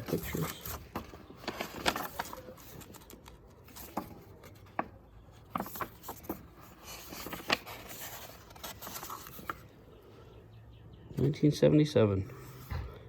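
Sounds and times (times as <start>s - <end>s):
book pages rustling: 0.0s - 9.8s.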